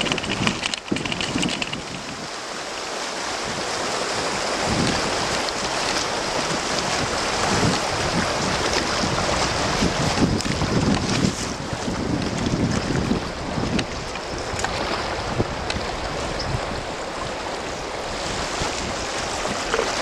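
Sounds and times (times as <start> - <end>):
water rushing over rocks: 0.0 - 20.0
wind gusting on microphone: 0.0 - 20.0.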